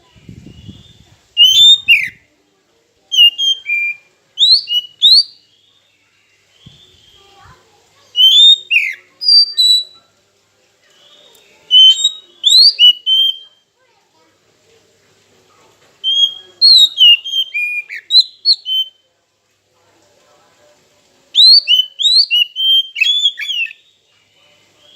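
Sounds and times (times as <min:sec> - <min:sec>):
bird singing whistled phrases: 0:00.3 - 0:02.2, 0:03.1 - 0:07.4, 0:08.1 - 0:10.0, 0:11.0 - 0:13.6, 0:16.0 - 0:19.0, 0:21.3 - 0:24.1.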